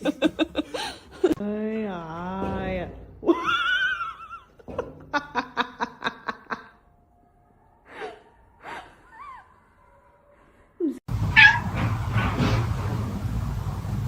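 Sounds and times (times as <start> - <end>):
person laughing: 0.0 - 1.4, 3.3 - 6.8.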